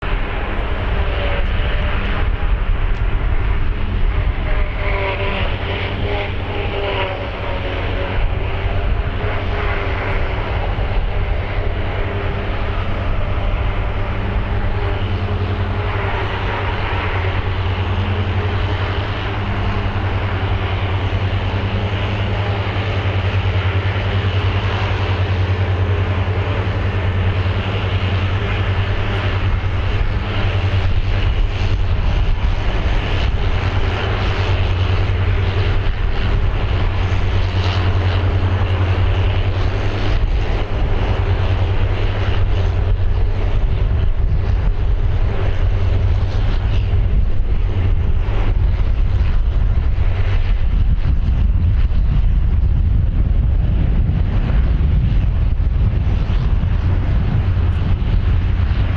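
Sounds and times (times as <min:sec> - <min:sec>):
aircraft engine drone: 0:00.0 - 0:58.9.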